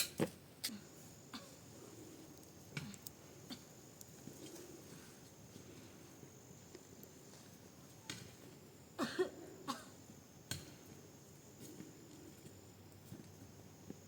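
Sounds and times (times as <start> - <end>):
person coughing: 9.0 - 9.9.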